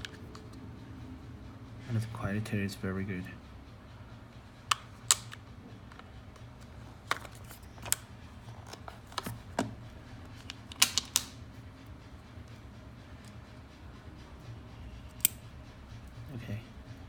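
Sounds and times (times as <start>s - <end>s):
screwdriver kit clicks and taps: 4.7s - 6.0s, 7.1s - 9.8s, 10.4s - 11.3s.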